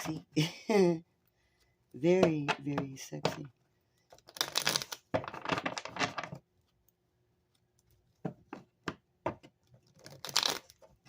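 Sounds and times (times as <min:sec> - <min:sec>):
papery rustle of cards: 0:04.1 - 0:06.8, 0:09.7 - 0:11.0.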